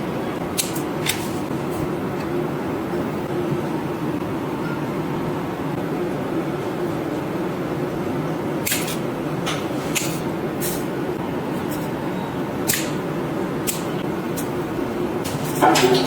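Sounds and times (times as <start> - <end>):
steady whirring hum: 0.0 - 16.0
sharp clicks or snips: 12.7 - 13.0.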